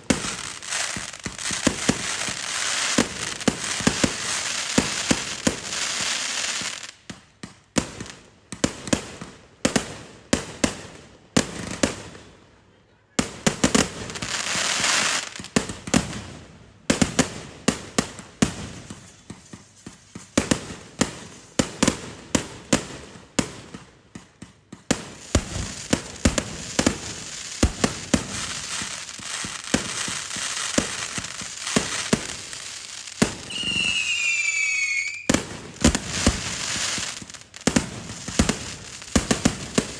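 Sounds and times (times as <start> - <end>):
firework crackling: 0.0 - 7.2, 13.3 - 16.3, 17.0 - 39.9
firework bangs: 18.4 - 39.9
descending firework whistle: 33.4 - 35.4.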